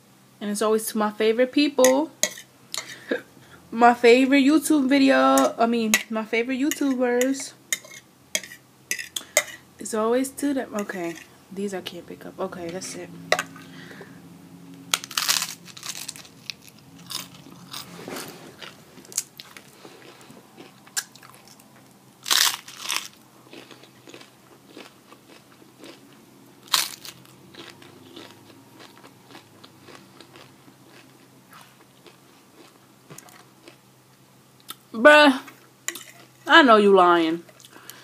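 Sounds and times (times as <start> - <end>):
crunchy bites: 14.9 - 21.6, 22.2 - 26.0, 26.6 - 32.8
chewing: 15.0 - 33.8.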